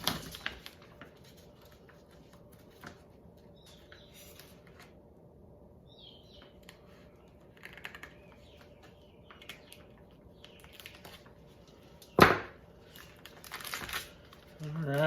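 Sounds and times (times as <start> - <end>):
plastic wrapping crinkling: 0.0 - 3.0, 9.4 - 12.2, 12.8 - 15.0.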